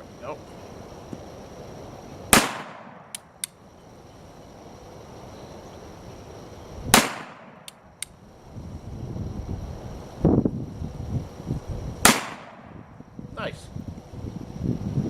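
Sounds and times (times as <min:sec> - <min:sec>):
revolver hammer cocking clicks: 0:03.1 - 0:03.6.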